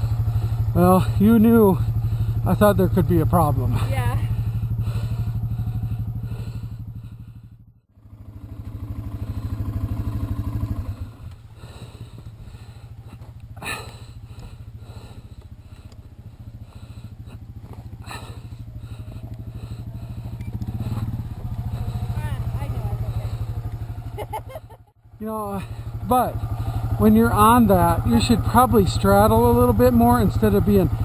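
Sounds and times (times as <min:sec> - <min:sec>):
motorcycle engine idling: 0:00.0 - 0:31.0.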